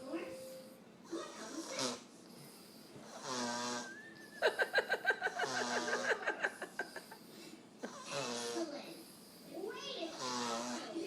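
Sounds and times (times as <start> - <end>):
toddler snoring: 1.2 - 4.0, 5.3 - 7.2, 7.8 - 11.0.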